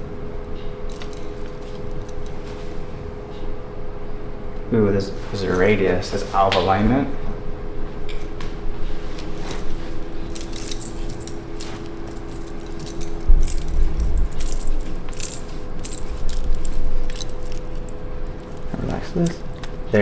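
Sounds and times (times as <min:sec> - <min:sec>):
steady low hum: 0:00.0 - 0:20.0
light rustling: 0:08.2 - 0:20.0.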